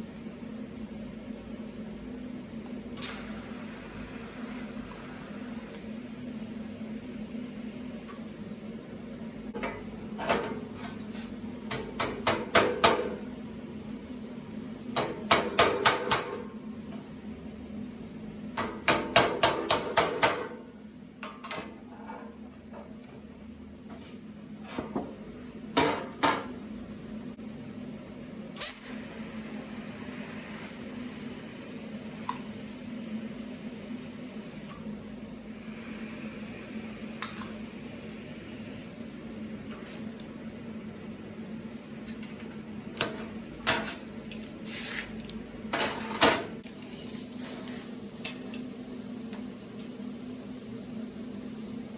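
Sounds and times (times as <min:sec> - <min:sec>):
steady hum: 0:00.0 - 0:51.9
hammering sheet steel: 0:18.6 - 0:20.6.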